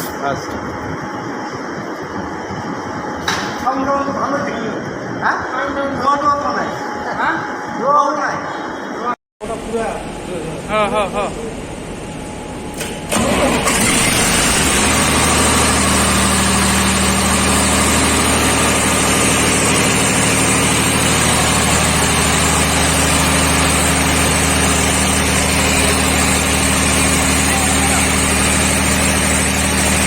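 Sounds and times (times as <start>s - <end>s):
diesel generator engine running: 9.4s - 30.0s.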